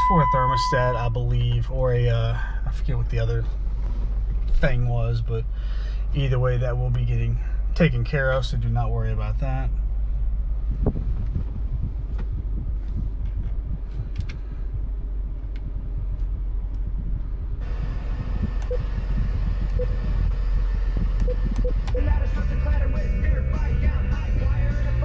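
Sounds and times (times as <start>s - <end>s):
car engine rumble from inside: 0.0s - 25.0s
radio playing music: 17.7s - 25.0s.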